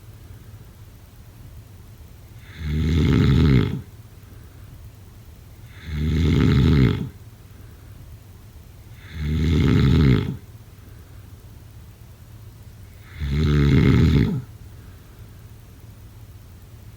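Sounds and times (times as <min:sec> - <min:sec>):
person snoring rasping: 0:02.4 - 0:03.9, 0:05.7 - 0:07.2, 0:09.0 - 0:10.4, 0:13.0 - 0:14.5.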